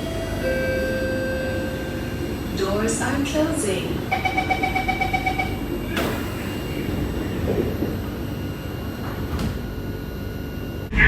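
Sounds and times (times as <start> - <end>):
train rumble: 0.0 - 11.0
door warning beeps: 4.0 - 6.4
train doors shutting thump: 4.2 - 9.8.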